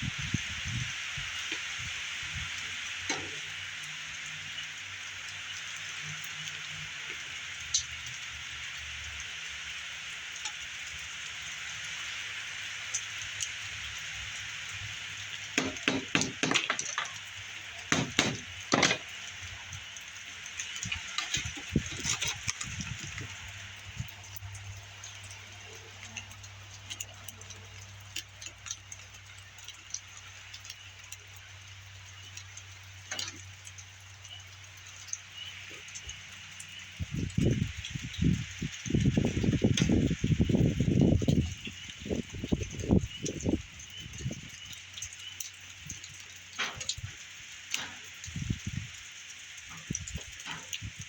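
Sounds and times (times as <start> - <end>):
sharp knocks and clicks: 15.6 - 17.2, 17.9 - 19.2.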